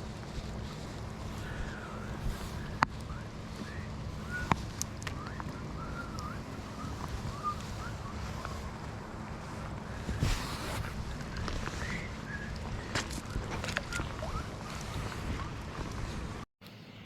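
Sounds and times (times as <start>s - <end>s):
small birds chirping: 0.0s - 17.0s
steady low rumble: 0.0s - 17.0s.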